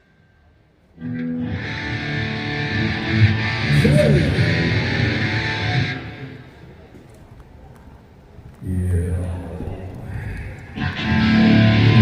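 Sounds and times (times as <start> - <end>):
distorted electric guitar riff: 1.0 - 6.7, 10.4 - 12.0.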